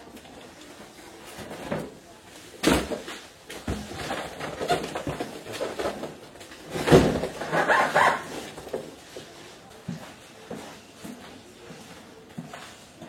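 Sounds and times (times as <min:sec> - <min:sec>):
objects knocking and clattering: 0:02.6 - 0:09.0.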